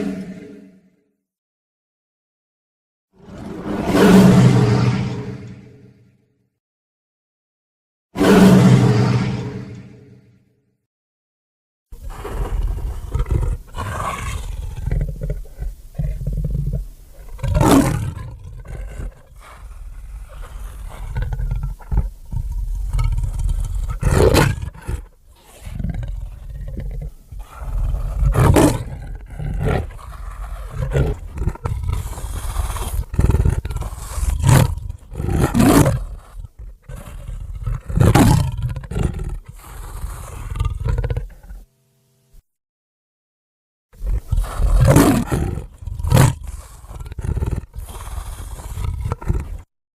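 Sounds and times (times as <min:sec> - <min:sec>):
monster roars and screeches: 0:00.0 - 0:00.8, 0:03.2 - 0:05.9, 0:08.2 - 0:10.2.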